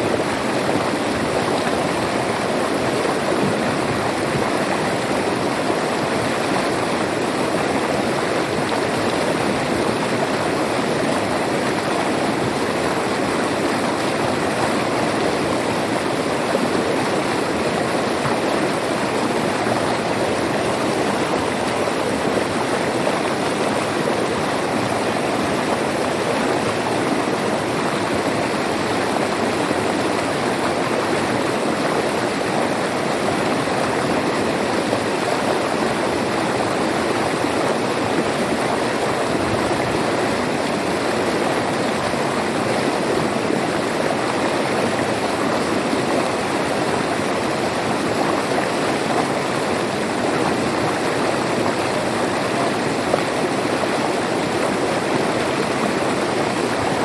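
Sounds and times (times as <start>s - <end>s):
river water splashing over rocks: 0.0s - 57.0s.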